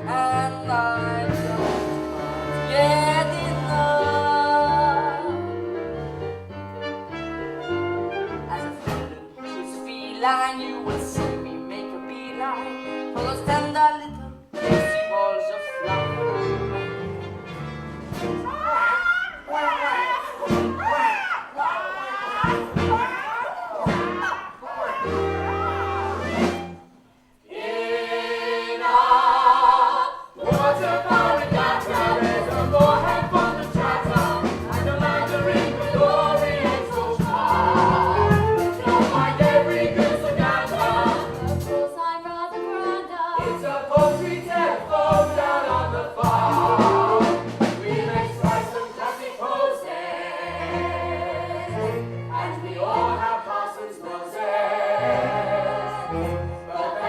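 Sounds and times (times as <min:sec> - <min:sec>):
band accompaniment with beat: 0:01.1 - 0:02.8, 0:14.5 - 0:15.2, 0:16.0 - 0:18.6, 0:22.4 - 0:23.2, 0:23.9 - 0:24.4, 0:25.1 - 0:26.8, 0:30.4 - 0:41.8, 0:43.4 - 0:49.0
chorus singing: 0:16.1 - 0:57.0.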